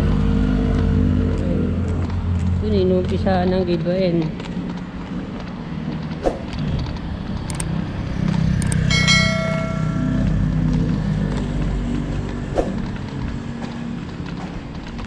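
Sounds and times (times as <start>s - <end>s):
street traffic: 0.0s - 15.0s
vehicle engine running: 0.0s - 15.0s
high ringing tone: 8.7s - 10.6s.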